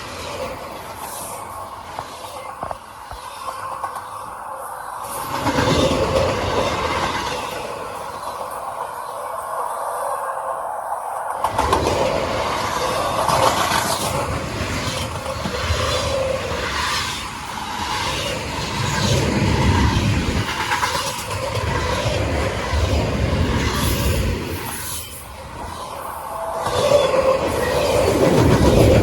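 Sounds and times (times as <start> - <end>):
freight train rumbling past: 0.0 - 29.0
train wheels clattering: 11.3 - 29.0.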